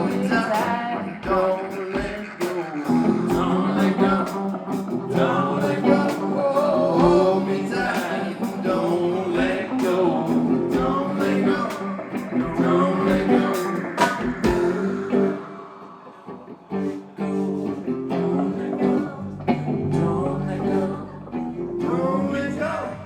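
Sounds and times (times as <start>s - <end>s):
rock band playing: 0.0s - 23.0s
drum hits: 7.0s - 8.1s, 12.4s - 14.9s.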